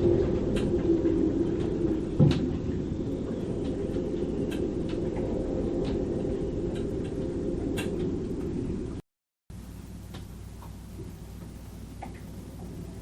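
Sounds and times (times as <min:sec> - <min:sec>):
storm wind in rigging: 0:00.0 - 0:09.0
wind howling: 0:00.0 - 0:09.0.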